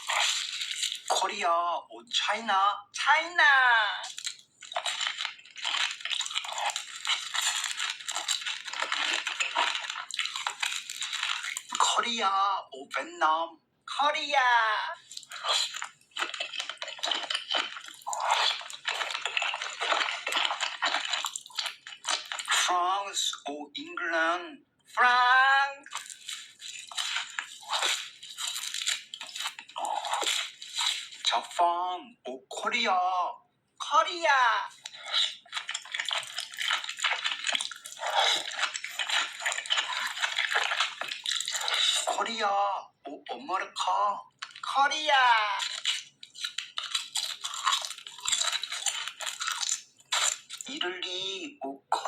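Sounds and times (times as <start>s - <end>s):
wet chewing and smacking: 0.0s - 1.4s, 3.8s - 12.0s, 15.0s - 23.5s, 25.8s - 31.6s, 34.7s - 42.3s, 44.3s - 50.8s.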